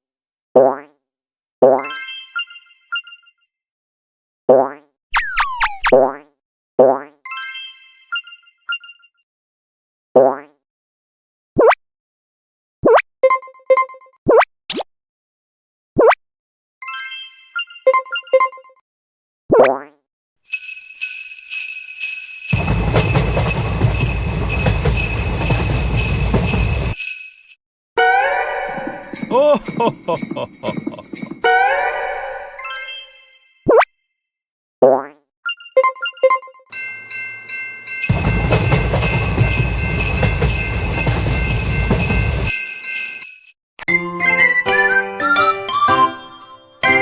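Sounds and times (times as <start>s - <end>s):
railroad crossing bell ringing: 21.7s - 27.2s, 36.7s - 43.4s
train rumbling past: 22.6s - 27.0s, 38.1s - 42.5s.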